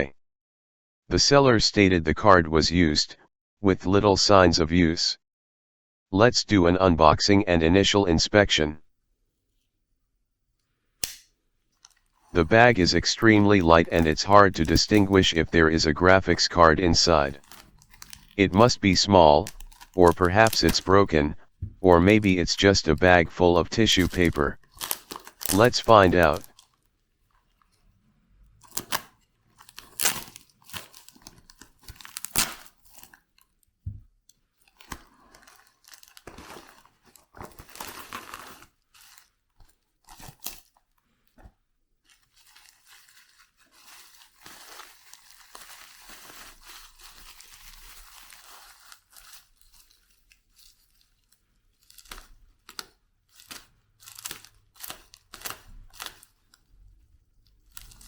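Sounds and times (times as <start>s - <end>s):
packaging crinkling and rustling: 11.7s - 58.0s
mailing bag tearing: 11.8s - 16.2s, 17.0s - 21.2s, 23.8s - 26.8s, 28.6s - 33.4s, 34.7s - 39.4s, 40.0s - 40.8s, 42.2s - 56.6s, 57.6s - 58.0s.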